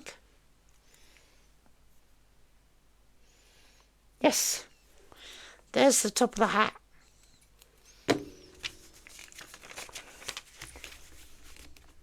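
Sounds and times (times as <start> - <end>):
faint clicks and rustles of pieces: 0.6 - 2.1, 7.0 - 12.0.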